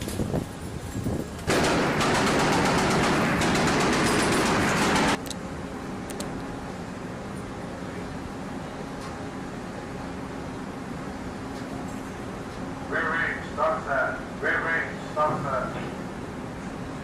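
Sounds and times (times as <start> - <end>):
chain gun firing burst: 1.5 - 5.2.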